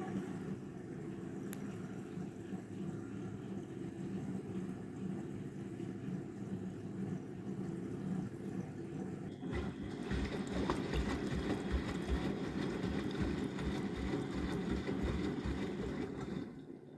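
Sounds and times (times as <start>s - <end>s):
washing machine hum: 0.0s - 16.9s
water sloshing in drum: 9.4s - 16.7s.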